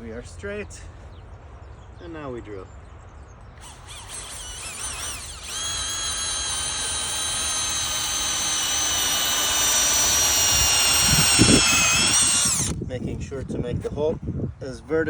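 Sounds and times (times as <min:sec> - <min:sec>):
power drill whining: 0:03.6 - 0:12.8.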